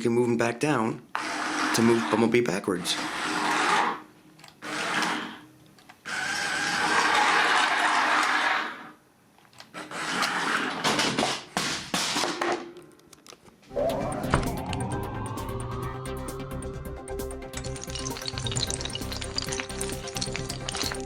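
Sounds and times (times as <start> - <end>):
toy car electric motor running: 1.2 - 4.0, 4.6 - 5.4, 6.1 - 8.9, 17.6 - 21.0.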